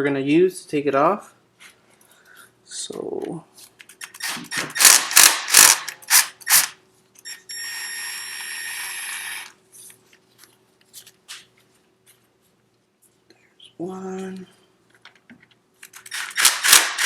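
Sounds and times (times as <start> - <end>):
small power tool whirring: 4.1 - 9.6
hex tool grinding on bolt: 4.2 - 6.8.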